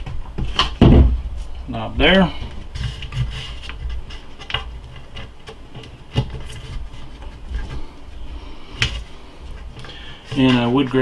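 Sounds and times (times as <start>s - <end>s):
rubbing: 2.3s - 11.0s.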